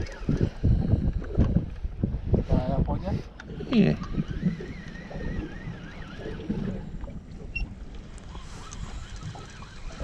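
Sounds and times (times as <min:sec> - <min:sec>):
water around boat: 0:00.0 - 0:10.0
wind on microphone: 0:00.0 - 0:10.0.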